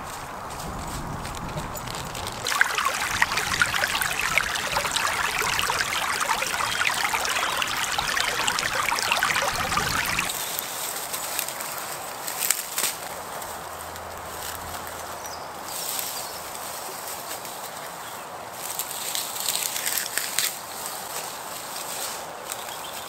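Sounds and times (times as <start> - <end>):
stream babbling over stones: 1.2 - 10.3.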